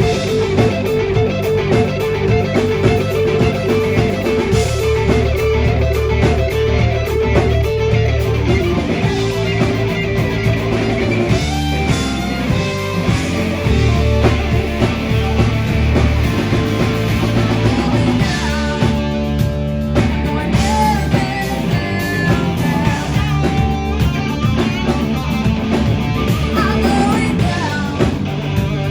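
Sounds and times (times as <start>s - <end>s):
electric guitar lead notes: 0.0s - 28.9s
live rock band playing: 0.0s - 28.9s.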